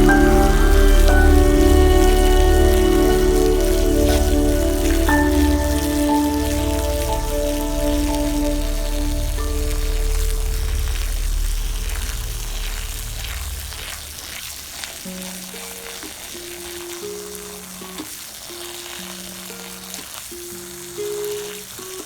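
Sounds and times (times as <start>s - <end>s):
slow melody of held notes: 0.0s - 14.0s
deep bass tone: 0.0s - 14.2s
running water: 0.0s - 22.0s.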